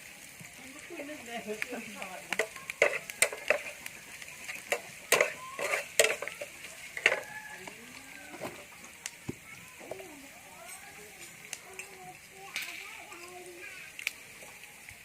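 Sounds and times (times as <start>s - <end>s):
food sizzling in a pan: 0.0s - 15.0s
utensil clinking and scraping pan: 1.3s - 8.8s.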